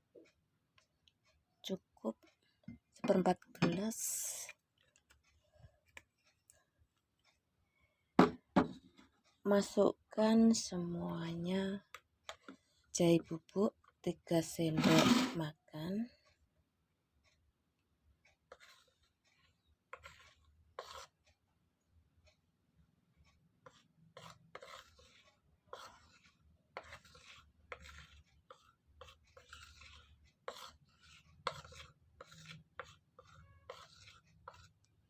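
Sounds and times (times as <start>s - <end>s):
spoon scraping and tapping: 19.9s - 21.2s, 23.6s - 35.0s.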